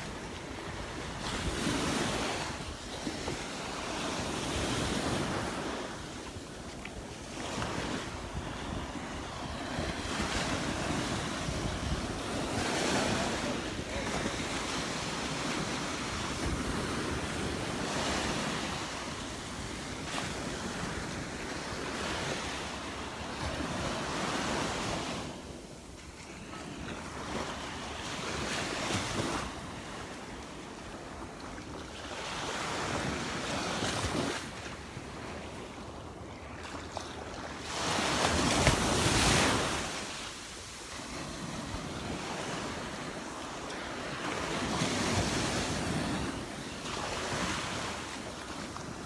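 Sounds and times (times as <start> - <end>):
wind rumbling on microphone: 0.0 - 25.7
surf breaking on a sandy beach: 0.0 - 49.0.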